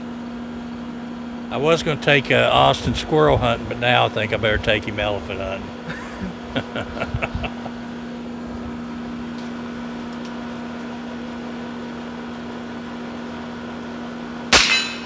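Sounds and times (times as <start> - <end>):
air conditioner humming: 0.0 - 15.0
revolver gunshot: 14.5 - 15.0.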